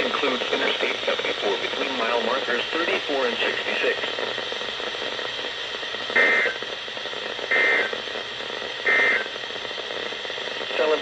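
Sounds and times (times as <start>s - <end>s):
radio hiss: 0.0s - 11.0s
digital data tone bursts: 6.1s - 6.7s, 7.5s - 8.0s, 8.8s - 9.3s.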